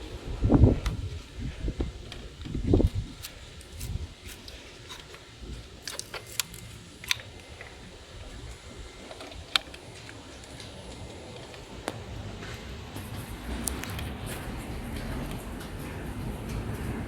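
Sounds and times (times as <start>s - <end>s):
plastic and metal clicks: 2.0s - 7.8s.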